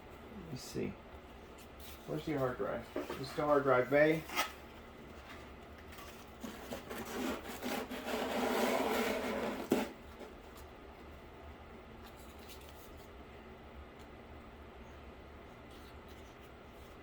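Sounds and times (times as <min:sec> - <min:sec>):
cardboard rubbing and sliding: 0:06.0 - 0:10.3.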